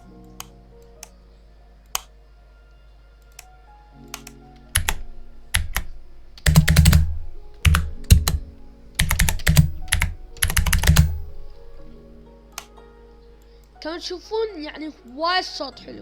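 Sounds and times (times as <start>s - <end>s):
mechanical keyboard keystroke clicks: 4.1s - 12.0s.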